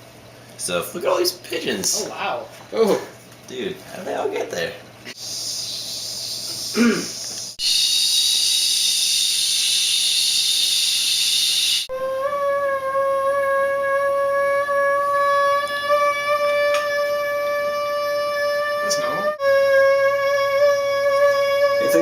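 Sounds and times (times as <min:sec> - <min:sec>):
kettle steam hiss: 0:05.2 - 0:11.9
kettle whistling: 0:05.2 - 0:11.9.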